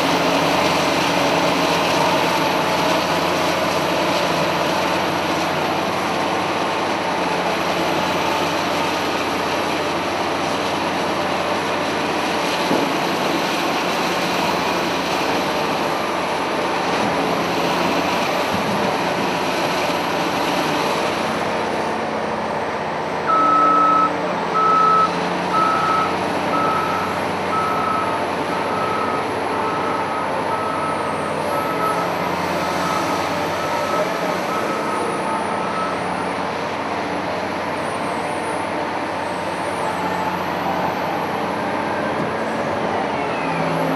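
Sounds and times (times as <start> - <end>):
diesel engine running: 0.0 - 43.9
reversing alarm beeping: 23.3 - 36.3.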